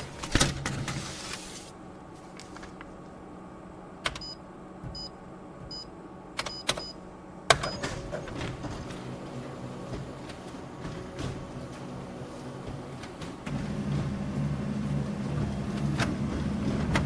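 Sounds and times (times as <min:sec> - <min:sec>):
printer humming: 0:00.0 - 0:17.0
printer mechanism running: 0:07.5 - 0:17.0.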